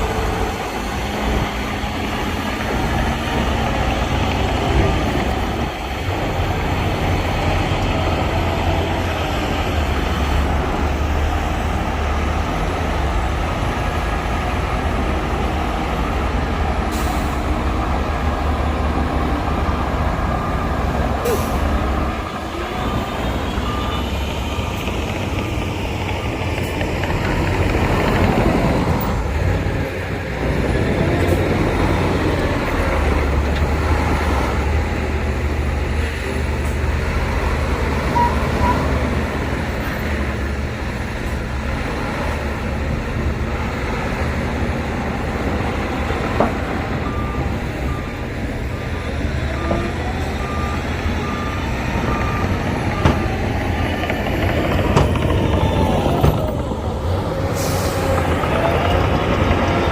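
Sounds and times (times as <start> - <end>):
heavy diesel machinery running: 0.0 - 59.9
reversing alarm beeping: 19.3 - 26.6, 49.2 - 56.5.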